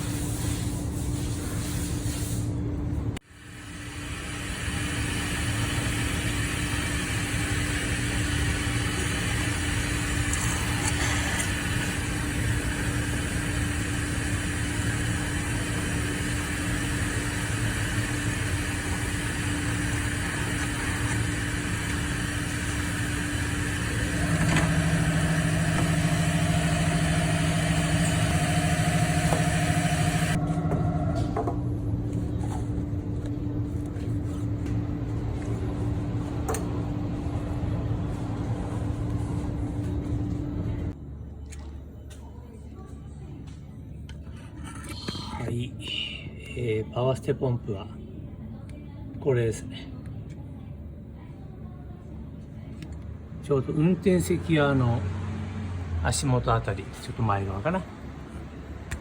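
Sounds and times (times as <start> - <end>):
louder droning tone: 23.8 - 31.4.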